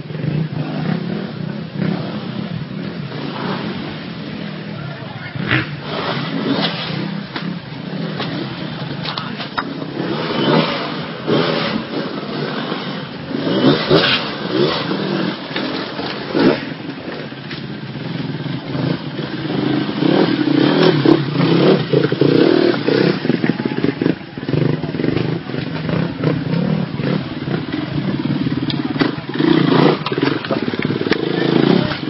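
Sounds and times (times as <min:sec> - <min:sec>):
dirt bike engines revving: 0:00.0 - 0:32.0.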